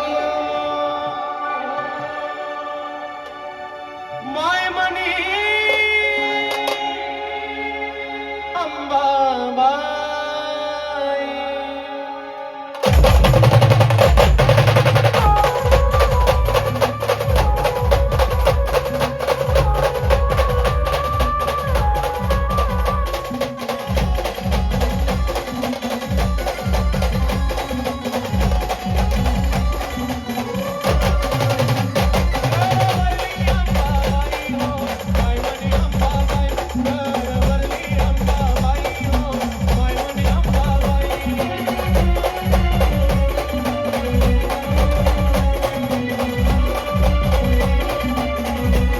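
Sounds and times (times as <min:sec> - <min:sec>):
band music: 0:12.7 - 0:48.9
fast drum beat: 0:12.8 - 0:48.9.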